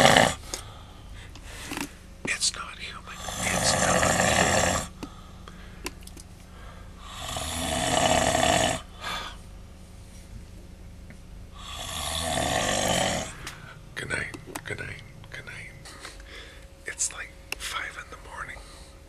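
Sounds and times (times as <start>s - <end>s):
man snoring: 0.0s - 0.4s, 3.0s - 5.0s, 7.0s - 9.4s, 11.6s - 13.4s.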